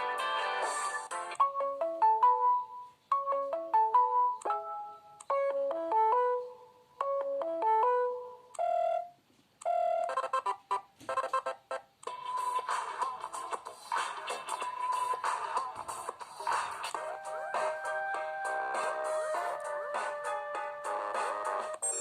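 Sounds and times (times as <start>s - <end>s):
phone ringtone melody: 0.0s - 13.6s, 17.0s - 22.0s.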